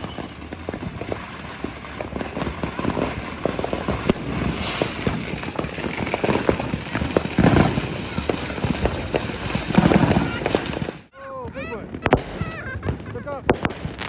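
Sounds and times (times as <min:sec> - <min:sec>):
fireworks popping and cracking: 0:00.0 - 0:14.0
firework rushing hiss: 0:03.9 - 0:06.7, 0:12.0 - 0:12.8, 0:13.5 - 0:14.0.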